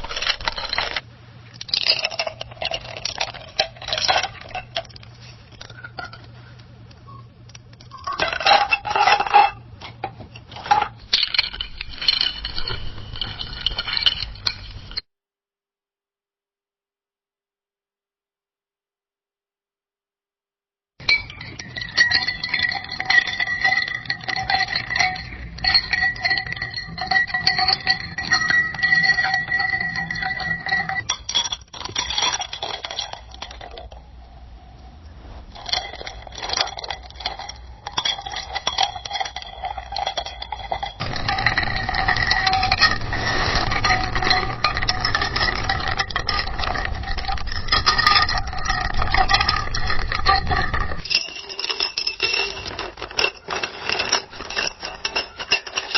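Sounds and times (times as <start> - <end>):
ice cubes clinking in a glass: 0.0 - 1.0, 1.7 - 4.9, 10.7 - 15.0, 21.0 - 34.0, 35.6 - 55.9.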